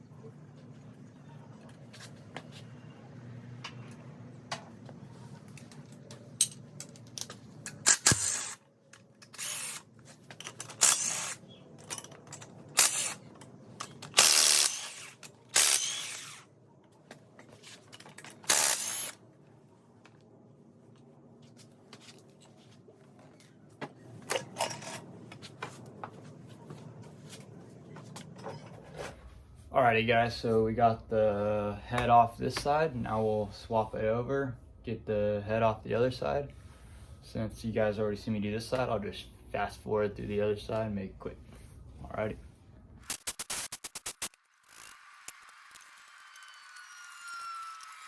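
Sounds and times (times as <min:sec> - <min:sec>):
power tool bursts: 0:07.8 - 0:08.6, 0:09.3 - 0:09.8, 0:10.7 - 0:11.4, 0:12.8 - 0:13.2, 0:14.1 - 0:16.5, 0:18.4 - 0:19.2, 0:43.1 - 0:48.0.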